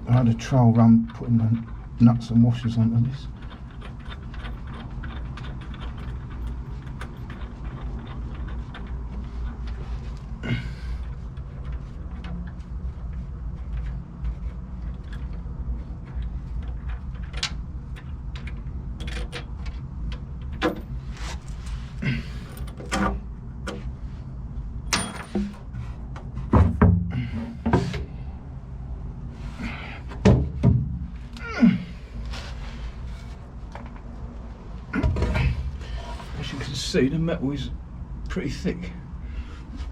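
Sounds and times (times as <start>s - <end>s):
steady low hum: 0.0s - 39.9s
clicks and clanks of hardware: 16.6s - 21.6s, 22.4s - 23.9s, 24.9s - 25.7s
heavy thumps: 24.9s - 28.1s, 30.1s - 31.2s.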